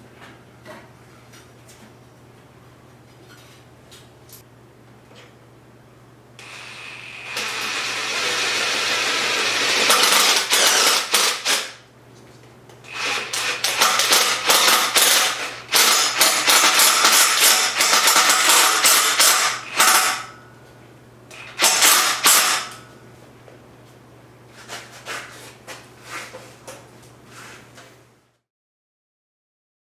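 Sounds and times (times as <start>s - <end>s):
power hammer striking: 9.4s - 11.8s, 13.0s - 20.4s, 21.5s - 22.8s.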